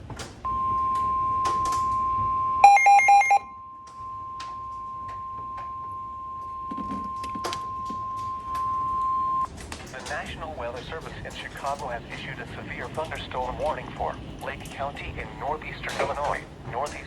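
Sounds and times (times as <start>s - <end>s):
short loud electronic beeps: 0.5s - 9.5s
steady high alarm tone: 0.5s - 9.5s.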